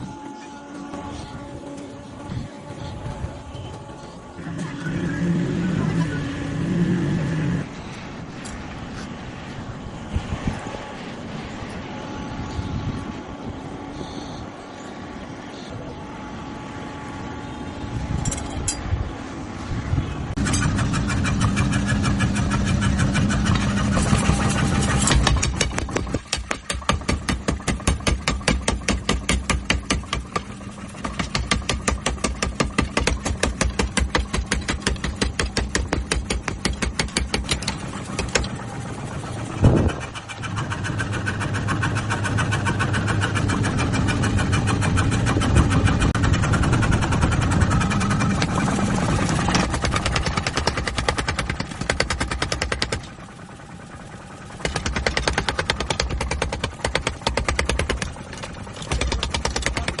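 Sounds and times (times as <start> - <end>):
power hammer pounding: 20.4 - 53.3, 54.5 - 60.0.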